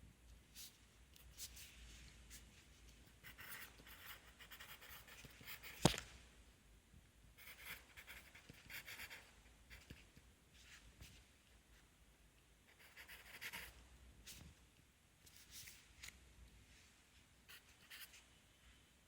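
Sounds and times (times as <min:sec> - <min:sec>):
pencil scratching on paper: 0:03.2 - 0:05.9, 0:07.4 - 0:10.0, 0:12.7 - 0:14.4, 0:17.5 - 0:18.2.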